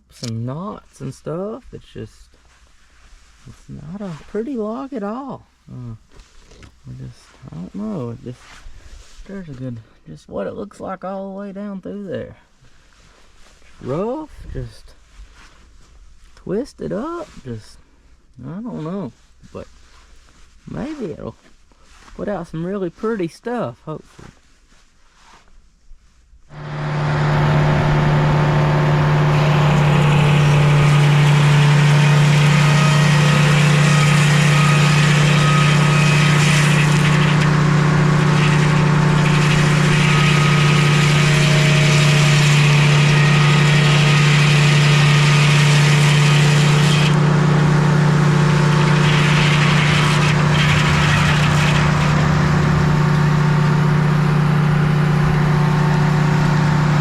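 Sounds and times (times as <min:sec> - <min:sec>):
sawmill engine drone: 0:26.5 - 0:57.0
saw blade hissing through log: 0:26.6 - 0:57.0.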